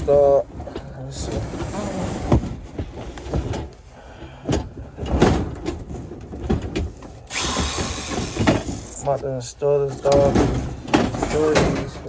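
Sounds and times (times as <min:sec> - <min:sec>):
boards scraping: 0:00.0 - 0:03.8.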